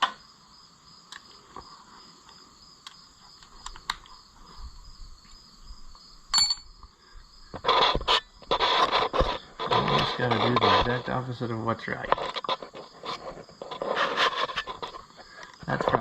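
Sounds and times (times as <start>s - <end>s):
crickets chirping: 0.0s - 16.0s
metal on metal clink: 6.3s - 6.8s
tools rattling: 6.4s - 6.8s.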